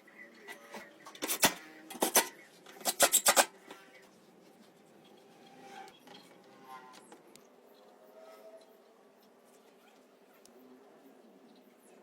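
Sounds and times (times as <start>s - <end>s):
clicks and knocks of tools: 0.5s - 3.8s.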